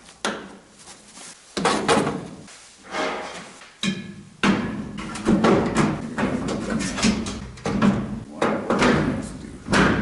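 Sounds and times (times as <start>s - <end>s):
tools knocking and clattering: 3.2s - 10.0s.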